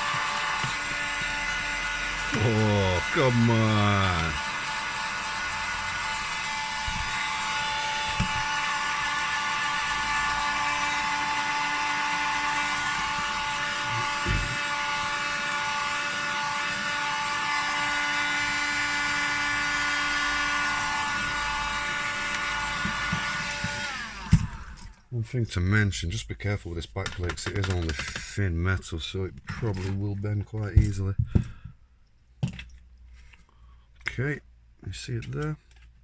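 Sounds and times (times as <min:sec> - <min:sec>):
hot-air gun whine and air rush: 0:00.0 - 0:25.0.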